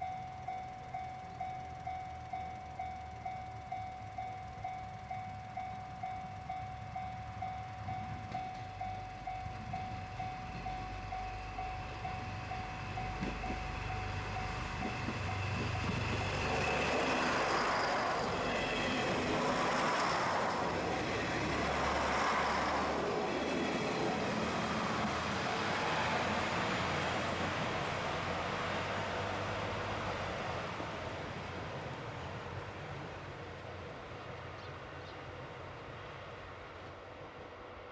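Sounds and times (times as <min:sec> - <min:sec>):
level-crossing bell clanging: 0:00.0 - 0:24.9
diesel train rumbling past: 0:00.0 - 0:37.9.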